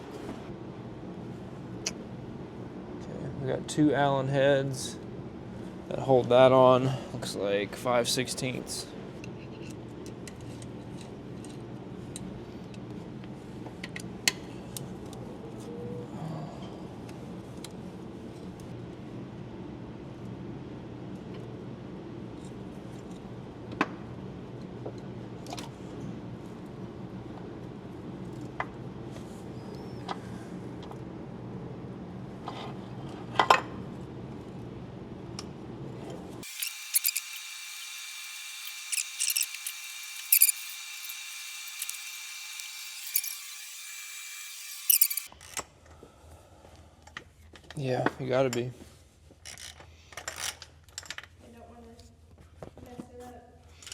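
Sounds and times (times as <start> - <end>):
sharp metal click: 36.4 - 45.3
steady high-pitched whine: 36.4 - 45.3.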